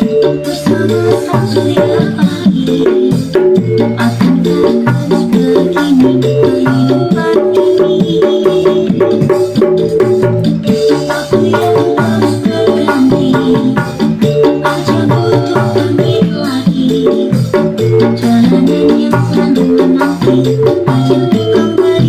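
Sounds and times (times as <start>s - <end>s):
hand drum busy rhythm: 0.0s - 22.0s
sustained instruments: 9.9s - 14.9s.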